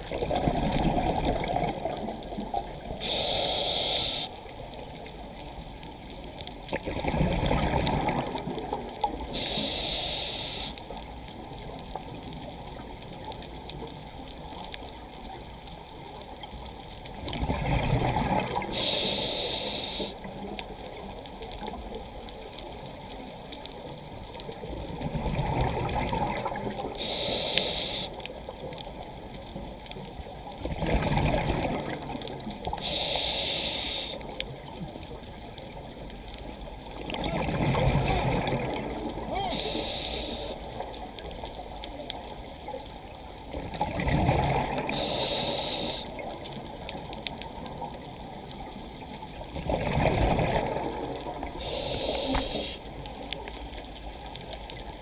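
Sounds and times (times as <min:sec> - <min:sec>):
exhaled air bubbling: 0:00.0 - 0:05.8, 0:06.5 - 0:13.0, 0:16.3 - 0:21.9, 0:24.6 - 0:28.1, 0:30.1 - 0:55.0
rush of water: 0:00.0 - 0:05.9, 0:06.6 - 0:12.1, 0:16.4 - 0:21.8, 0:24.6 - 0:28.2, 0:29.9 - 0:36.2, 0:36.8 - 0:55.0
regulator air hiss: 0:03.0 - 0:04.4, 0:09.4 - 0:10.8, 0:18.7 - 0:20.2, 0:27.0 - 0:28.2, 0:32.8 - 0:34.3, 0:39.5 - 0:40.7, 0:44.9 - 0:46.2, 0:51.6 - 0:52.8.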